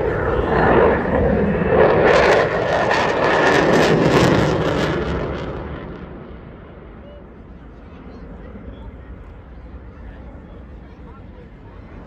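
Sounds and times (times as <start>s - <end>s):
jet flying past: 0.0s - 9.4s.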